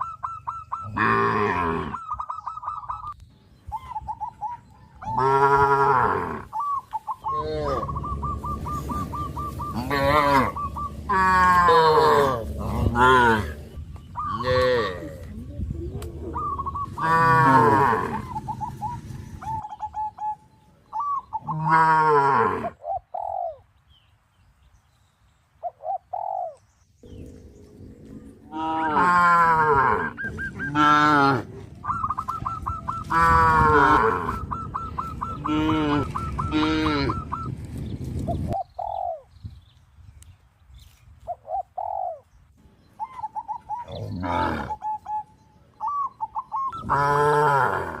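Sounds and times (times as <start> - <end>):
long loud pulsing animal calls: 3.8 - 23.6, 28.1 - 37.6, 43.0 - 48.0.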